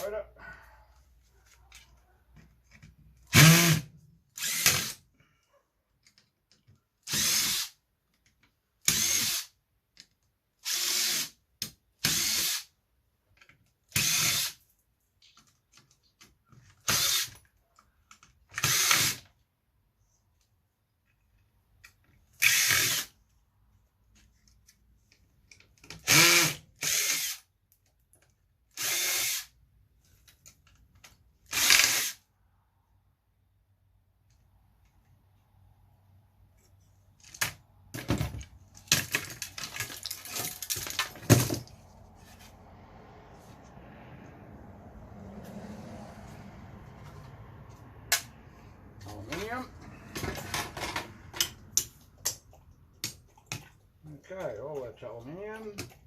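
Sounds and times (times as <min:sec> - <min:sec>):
power drill running in bursts: 0:03.3 - 0:03.8, 0:04.4 - 0:05.0.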